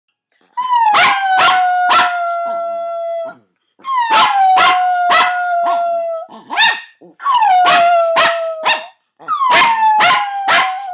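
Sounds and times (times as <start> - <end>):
dog howling: 0.7 - 6.3, 7.2 - 10.9
dog barking: 6.5 - 7.0, 7.6 - 10.9.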